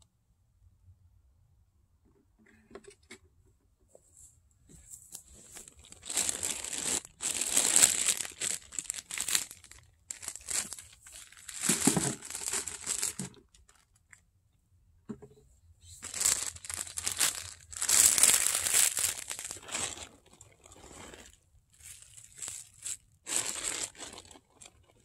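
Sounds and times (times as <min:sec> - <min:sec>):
plastic bag crinkling: 0:05.4 - 0:14.2, 0:16.0 - 0:25.0.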